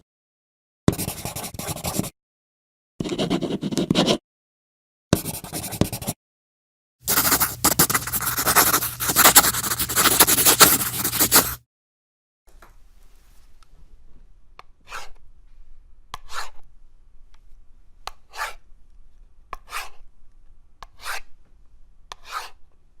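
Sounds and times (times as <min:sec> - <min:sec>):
pen scratching on paper: 0:00.9 - 0:02.1, 0:03.0 - 0:04.2, 0:05.1 - 0:06.2, 0:07.1 - 0:11.6, 0:14.8 - 0:15.2, 0:16.3 - 0:16.6, 0:18.3 - 0:18.6, 0:19.6 - 0:20.0, 0:21.0 - 0:21.2, 0:22.1 - 0:22.6.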